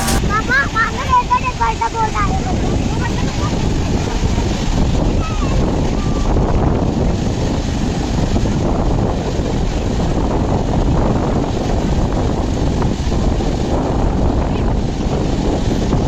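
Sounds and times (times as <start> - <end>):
waterfall rushing: 0.0 - 8.7
wind buffeting microphone: 0.0 - 16.0.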